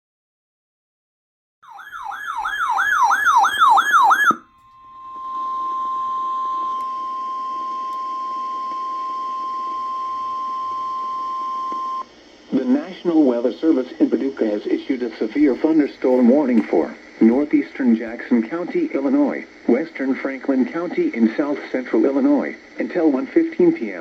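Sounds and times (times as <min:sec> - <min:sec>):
warbling siren-like tone: 0:01.6 - 0:07.9
steady warning alarm tone: 0:01.6 - 0:12.0.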